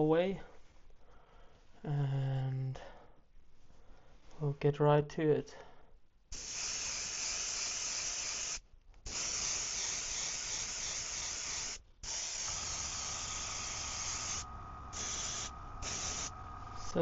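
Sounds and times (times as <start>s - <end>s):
airbrush hissing: 6.3s - 17.0s.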